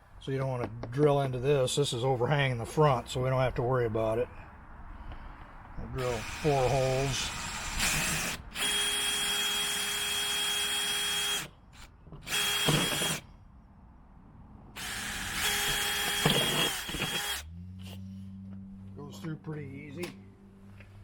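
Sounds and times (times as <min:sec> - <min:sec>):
power drill whining: 0:06.0 - 0:13.2, 0:14.8 - 0:17.5.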